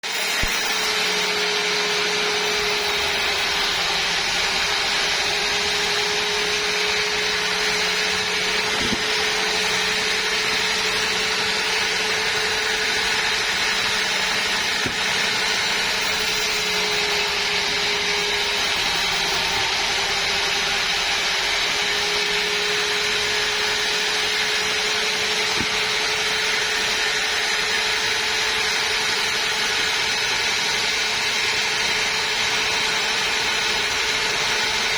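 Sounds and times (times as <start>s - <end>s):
saw cutting log hiss: 0.0s - 23.6s
sawmill saw humming: 0.0s - 34.9s.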